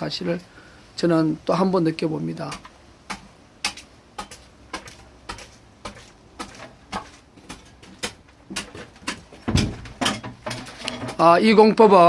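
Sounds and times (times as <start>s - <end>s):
sharp rhythmic clicks: 2.5s - 9.2s.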